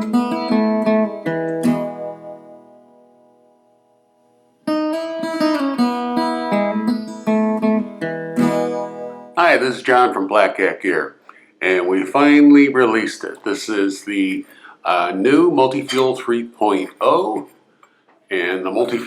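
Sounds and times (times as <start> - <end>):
acoustic guitar playing: 0.0 - 10.4.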